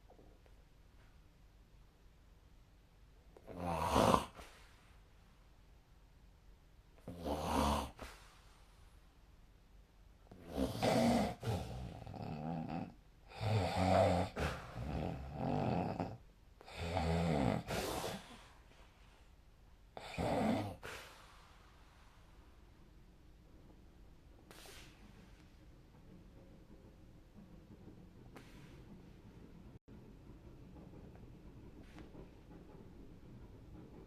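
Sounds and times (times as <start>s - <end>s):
person snoring: 3.4s - 4.6s, 7.0s - 8.1s, 10.3s - 18.4s, 20.0s - 21.0s.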